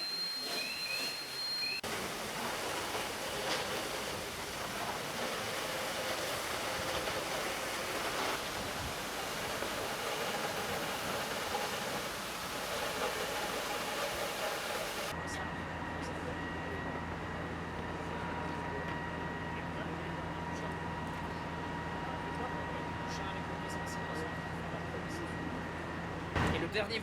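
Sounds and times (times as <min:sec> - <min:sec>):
water jets hissing from hoses: 0:00.0 - 0:15.2.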